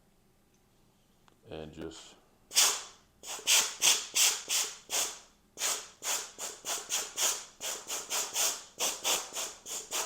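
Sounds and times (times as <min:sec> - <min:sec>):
compressed air blow gun puffs: 0:02.5 - 0:10.0.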